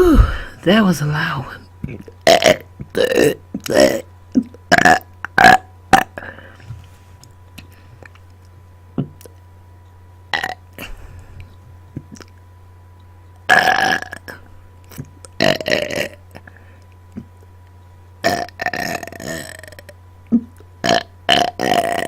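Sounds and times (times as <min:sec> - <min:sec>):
person burping: 0:00.0 - 0:00.6, 0:02.2 - 0:06.5, 0:10.4 - 0:10.6, 0:13.5 - 0:14.4, 0:15.4 - 0:16.2, 0:18.2 - 0:22.0.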